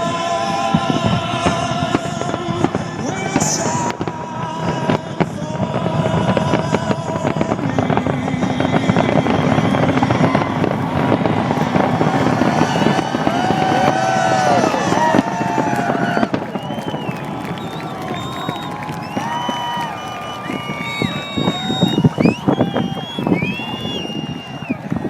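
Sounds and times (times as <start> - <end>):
fireworks bursting and crackling: 0.0 - 25.0.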